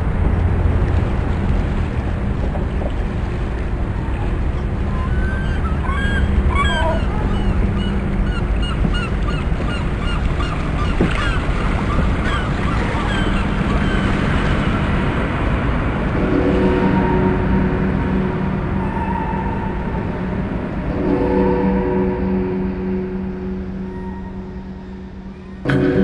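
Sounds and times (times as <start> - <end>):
water noise: 0.0 - 26.0
wind: 0.0 - 26.0
bird-like honking calls: 4.8 - 14.7.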